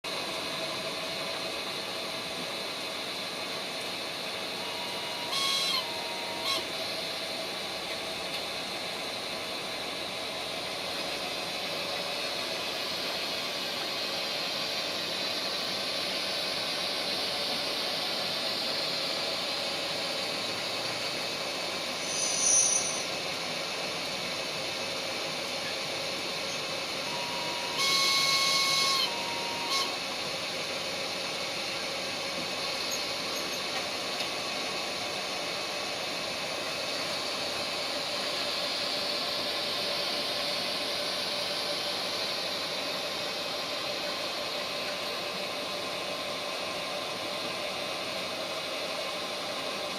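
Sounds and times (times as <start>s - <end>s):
model locomotive running hiss: 0.1s - 49.9s
two-note horn: 5.3s - 6.7s, 27.2s - 30.0s.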